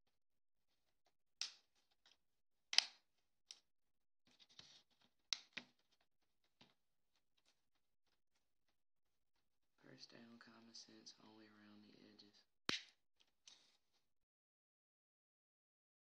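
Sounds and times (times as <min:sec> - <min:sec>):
plastic clips snapping: 0:02.7 - 0:03.6, 0:05.3 - 0:05.7.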